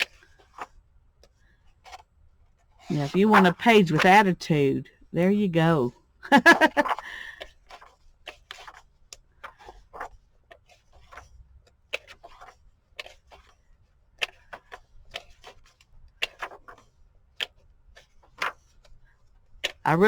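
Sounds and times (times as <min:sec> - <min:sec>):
book pages rustling: 0:00.0 - 0:02.1, 0:06.7 - 0:19.8.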